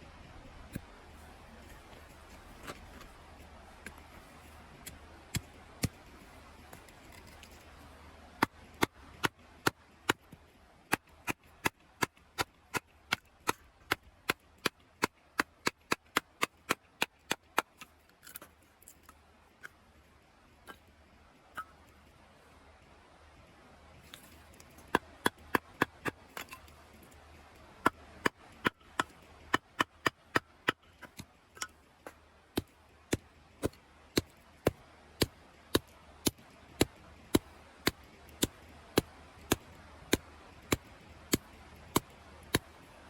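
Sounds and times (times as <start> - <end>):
axe chopping firewood: 4.8 - 6.0, 8.4 - 18.4, 24.1 - 26.7, 27.8 - 42.7.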